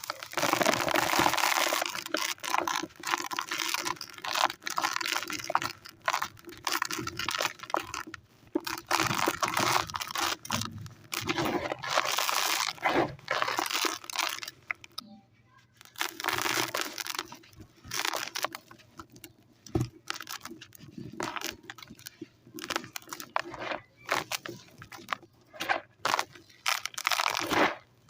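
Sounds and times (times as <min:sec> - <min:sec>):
sand crunching: 0:26.9 - 0:27.8.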